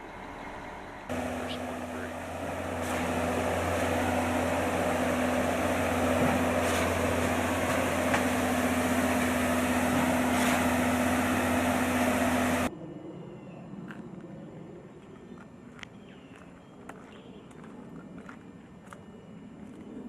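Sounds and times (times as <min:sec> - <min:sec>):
diesel engine humming: 0:00.0 - 0:12.7.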